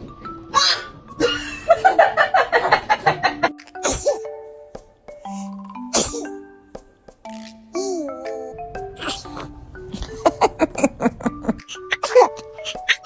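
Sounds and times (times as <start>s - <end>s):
light music with chiming notes: 0.0s - 13.0s
small child sneezing: 0.5s - 0.9s, 3.8s - 4.3s, 5.4s - 6.3s.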